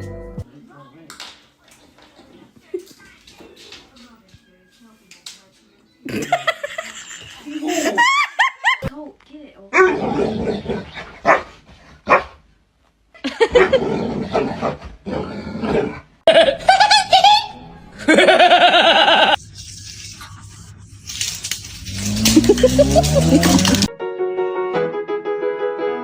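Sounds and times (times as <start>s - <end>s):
people laughing: 6.1s - 8.9s, 13.2s - 13.8s, 16.3s - 19.4s, 22.2s - 23.9s
dog barking: 11.2s - 12.4s.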